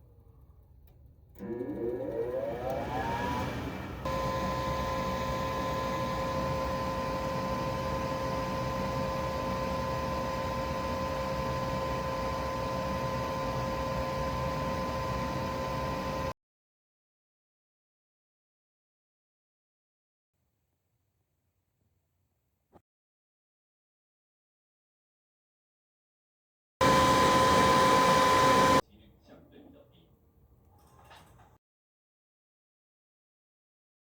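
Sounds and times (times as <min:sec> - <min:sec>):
furnace fan motor whining: 0:01.4 - 0:16.3, 0:26.8 - 0:28.8.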